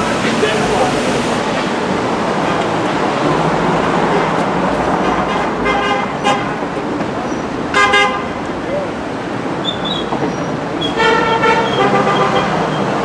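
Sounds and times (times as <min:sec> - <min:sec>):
road traffic: 0:00.0 - 0:13.0
car horn toots: 0:05.0 - 0:06.6, 0:07.7 - 0:08.4, 0:10.9 - 0:13.0.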